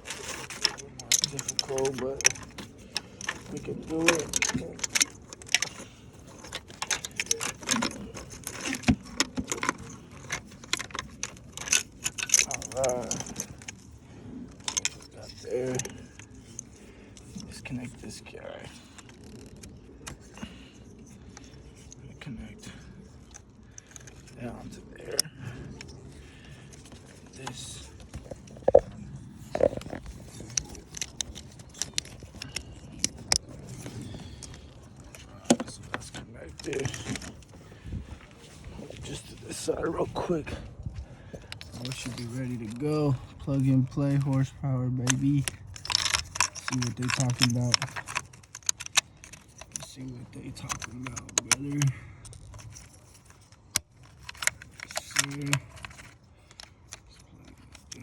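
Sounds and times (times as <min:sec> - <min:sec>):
plastic connectors clicking: 0:50.7 - 0:58.0.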